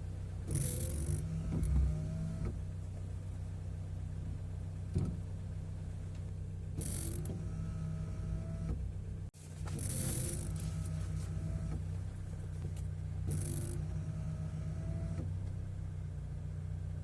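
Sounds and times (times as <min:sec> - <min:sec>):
steady low hum: 0:09.3 - 0:14.9
rear wiper squeaking on glass: 0:09.5 - 0:11.9.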